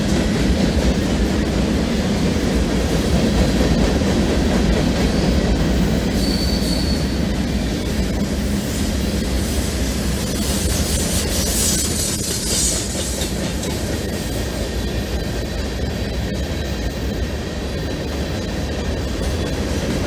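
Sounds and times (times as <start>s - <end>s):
freight train rumbling past: 0.0s - 20.0s
high wheel squeal: 5.0s - 16.4s.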